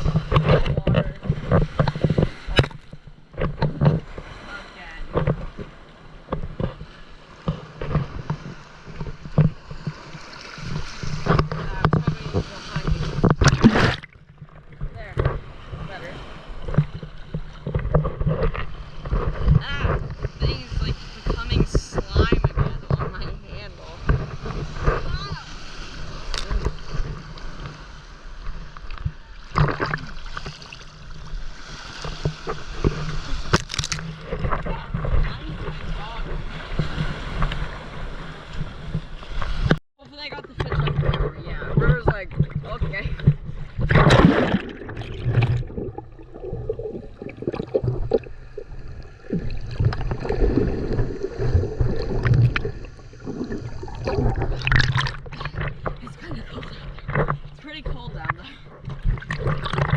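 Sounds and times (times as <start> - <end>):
splashes and knocks: 0.0 - 4.4, 5.1 - 59.9
rushing water: 0.0 - 59.9
wind noise: 0.0 - 59.9.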